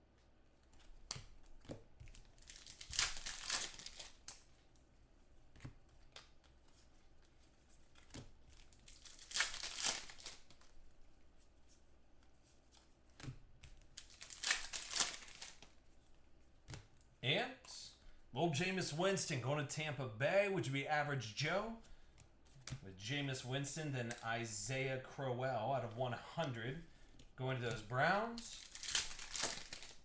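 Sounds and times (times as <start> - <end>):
cards tapping and clicking: 0.6 - 4.3
card pack wrappers crinkling: 1.7 - 4.5, 7.7 - 10.8, 13.7 - 15.8, 26.3 - 30.0.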